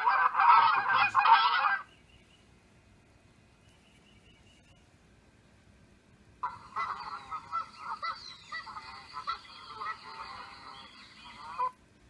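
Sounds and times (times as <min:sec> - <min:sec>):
ducks quacking: 0:00.0 - 0:01.9, 0:06.4 - 0:11.8.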